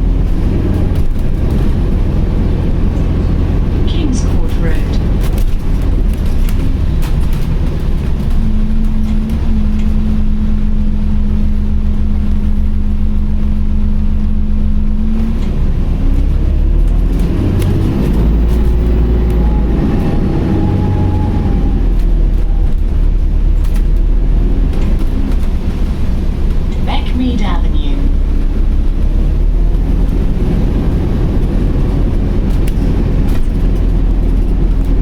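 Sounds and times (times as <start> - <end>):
bus drivetrain rumble: 0.0 - 35.0
hum-like whine: 8.2 - 15.5.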